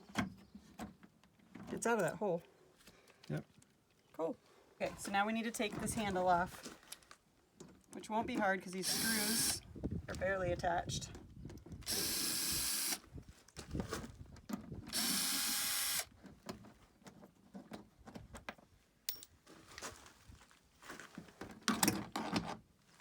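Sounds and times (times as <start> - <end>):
power drill running: 8.8 - 9.6, 11.8 - 13.0, 14.9 - 16.1.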